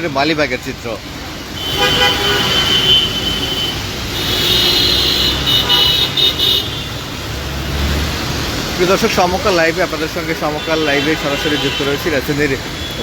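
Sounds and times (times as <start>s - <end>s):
road traffic rumble: 0.0s - 13.0s
vehicle horns honking: 1.5s - 7.1s, 10.4s - 13.0s.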